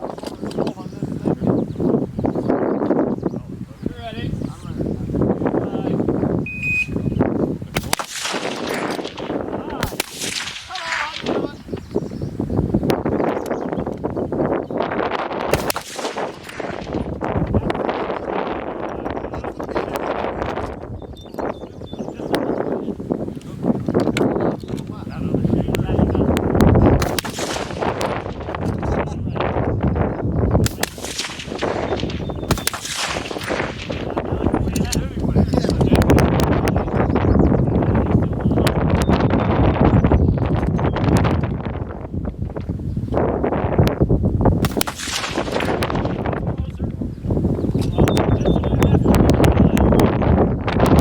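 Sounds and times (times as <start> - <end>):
wind buffeting microphone: 0.0 - 51.0
rifle shots: 7.7 - 11.5, 15.5 - 17.3, 27.0 - 28.6, 30.6 - 34.2, 44.6 - 46.2.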